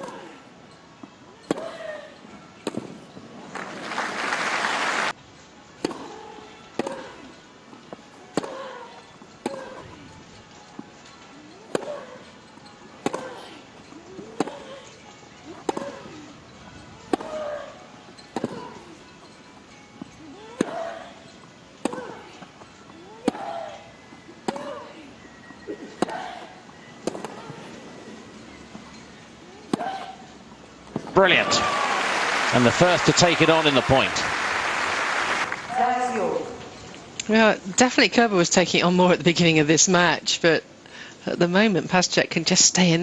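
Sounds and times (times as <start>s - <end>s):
crowd applause: 3.5s - 5.1s, 31.2s - 35.8s
tennis ball struck by rackets: 11.7s - 12.0s, 13.0s - 13.4s, 14.3s - 14.7s, 15.6s - 16.1s, 18.4s - 18.7s, 21.8s - 22.2s, 23.2s - 23.6s.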